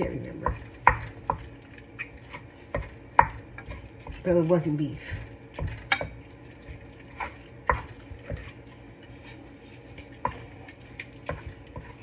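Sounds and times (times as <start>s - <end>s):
low frying sound: 0.0s - 12.0s.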